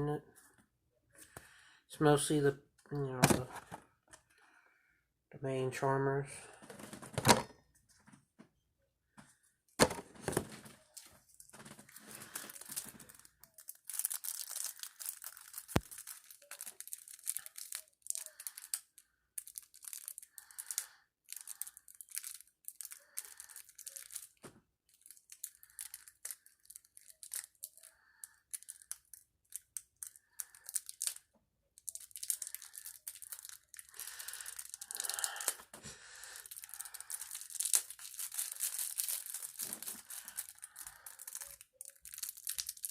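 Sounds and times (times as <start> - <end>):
packaging torn and crinkled: 10.3 - 35.6, 36.3 - 42.9.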